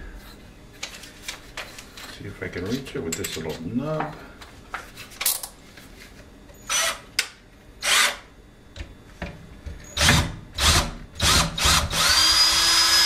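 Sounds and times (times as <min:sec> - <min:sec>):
power drill running: 0:06.7 - 0:07.0, 0:07.8 - 0:08.2, 0:10.0 - 0:13.0.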